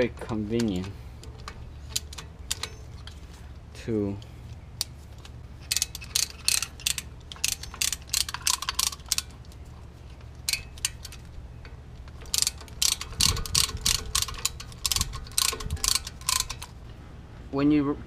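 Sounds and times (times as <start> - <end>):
ratchet wrench clicking: 0.0 - 3.3, 4.8 - 9.5, 10.4 - 11.3, 12.0 - 16.8.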